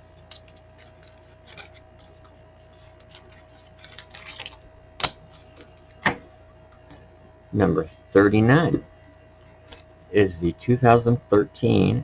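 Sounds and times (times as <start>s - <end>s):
faint steady hum: 0.0s - 12.0s
rubbing and scraping handling noises: 0.2s - 4.6s.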